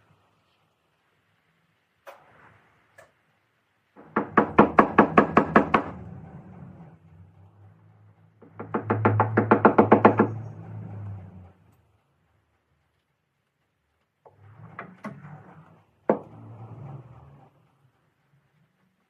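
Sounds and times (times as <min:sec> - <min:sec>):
rapid knocks: 0:04.0 - 0:06.0, 0:08.4 - 0:10.6.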